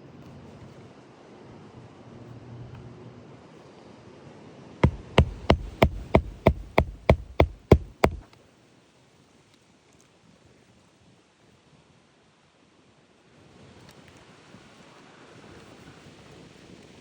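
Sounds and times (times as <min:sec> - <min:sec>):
hammer driving a nail: 0:04.8 - 0:08.2.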